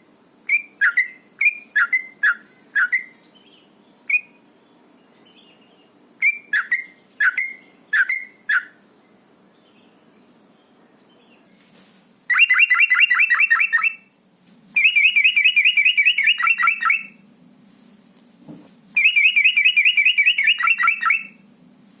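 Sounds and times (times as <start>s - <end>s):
bird rapid chirping song: 0.4s - 4.4s, 5.2s - 8.8s, 12.3s - 14.1s, 14.8s - 17.2s, 19.0s - 21.4s.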